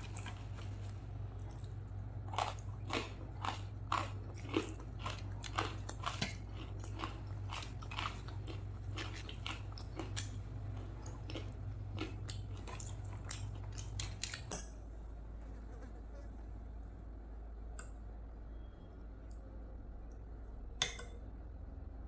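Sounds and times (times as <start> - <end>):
wet chewing and crunching: 0.0 - 14.7
steady low hum: 0.0 - 22.0.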